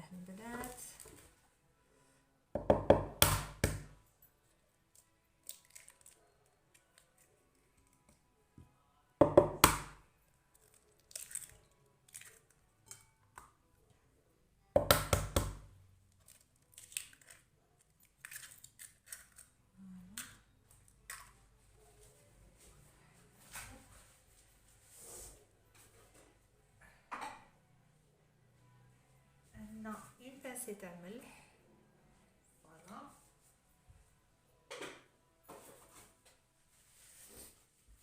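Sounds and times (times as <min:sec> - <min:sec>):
eggs cracking against a bowl: 0:05.4 - 0:08.0, 0:10.6 - 0:12.6, 0:14.8 - 0:19.6.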